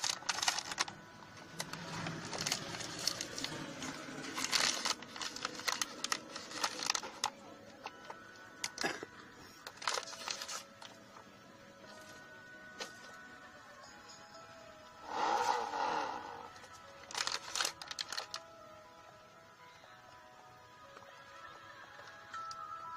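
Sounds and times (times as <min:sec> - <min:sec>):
material crinkling and rustling: 0:00.0 - 0:07.4, 0:09.6 - 0:11.0, 0:17.0 - 0:18.4.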